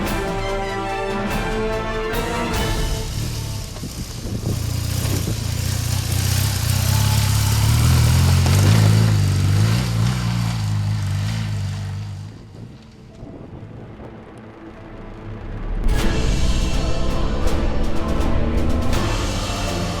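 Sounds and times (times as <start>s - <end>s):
motorcycle engine running: 2.6s - 13.3s
wind rush: 2.8s - 5.9s, 12.2s - 19.3s.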